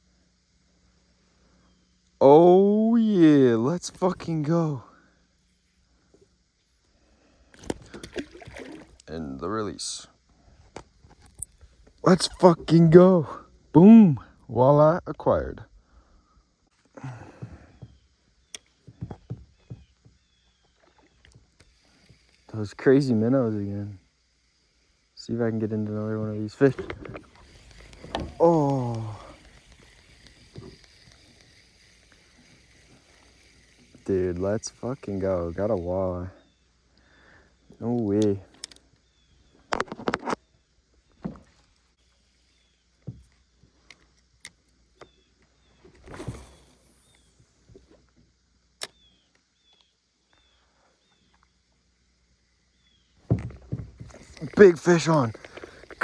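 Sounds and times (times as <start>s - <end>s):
light knocks and thumps of gear: 18.6s - 20.3s, 53.2s - 56.0s
sharp click: 48.8s - 49.1s.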